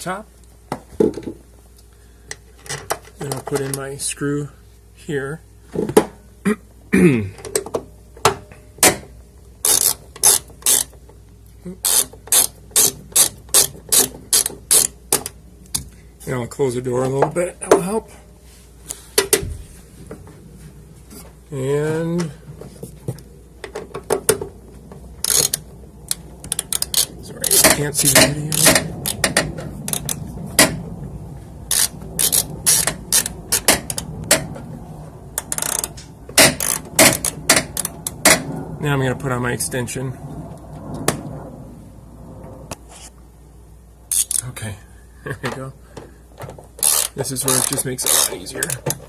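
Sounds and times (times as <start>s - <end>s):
socket ratchet clicking: 11.9s - 15.4s, 25.2s - 30.7s.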